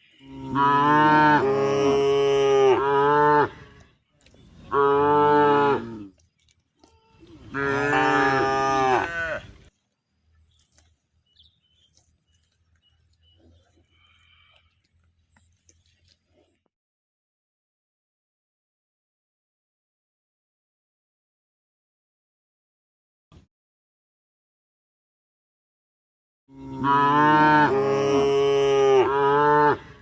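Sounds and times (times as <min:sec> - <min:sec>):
cow mooing: 0:00.1 - 0:03.9, 0:04.7 - 0:06.1, 0:07.5 - 0:09.5, 0:26.5 - 0:30.0.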